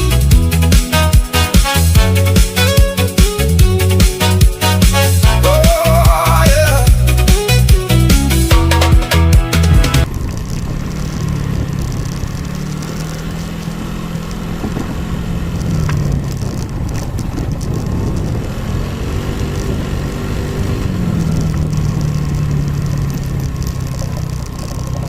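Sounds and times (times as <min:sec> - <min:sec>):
ride noise: 0:00.0 - 0:25.0
vehicle engine running: 0:00.0 - 0:25.0.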